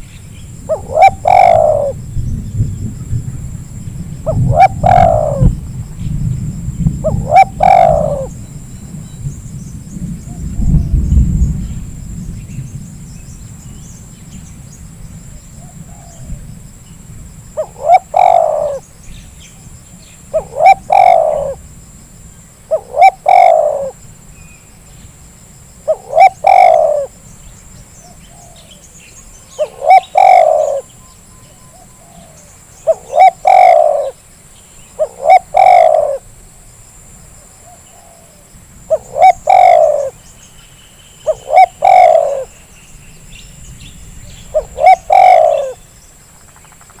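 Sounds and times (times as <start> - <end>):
dove cooing: 0.7 - 2.0, 4.2 - 5.6, 7.0 - 8.4, 15.6 - 16.4, 17.6 - 18.9, 20.3 - 21.6, 22.7 - 24.0, 25.8 - 27.2, 29.5 - 30.9, 31.6 - 34.2, 35.0 - 36.3, 37.6 - 40.2, 41.2 - 42.5, 44.2 - 45.8.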